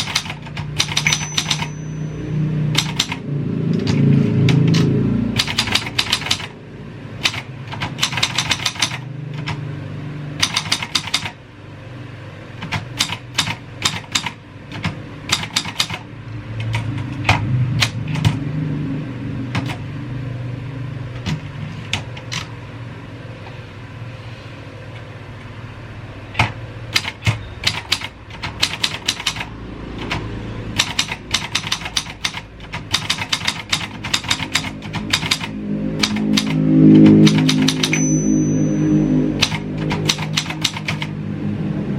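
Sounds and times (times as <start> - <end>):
typewriter keys typing: 0.0 - 1.8, 2.7 - 3.2, 3.8 - 6.5, 7.2 - 9.6, 10.4 - 11.4, 12.6 - 16.0, 16.6 - 18.4, 19.5 - 19.8, 26.4 - 38.0, 39.4 - 41.1
low steady rumble: 16.0 - 27.0, 34.5 - 41.9.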